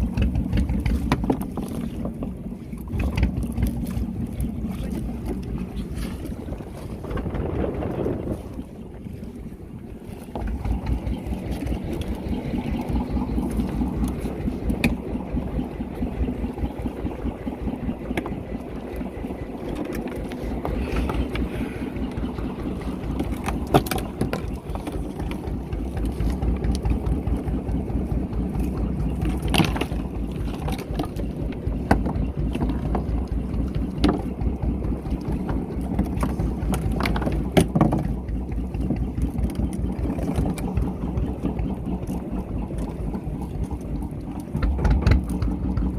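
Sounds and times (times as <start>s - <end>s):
knocks on boat: 0.0s - 2.1s, 31.8s - 39.6s, 44.6s - 45.9s
boat engine running: 0.0s - 45.9s.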